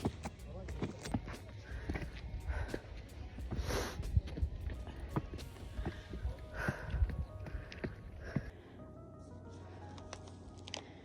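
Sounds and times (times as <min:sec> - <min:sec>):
footsteps on wooden steps: 0:00.0 - 0:08.5.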